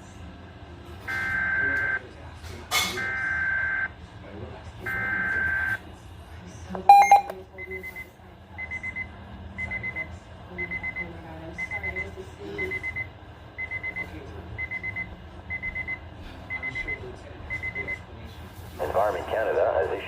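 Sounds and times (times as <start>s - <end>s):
alarm radio beeping: 1.1s - 2.0s, 4.9s - 5.8s, 6.8s - 11.0s.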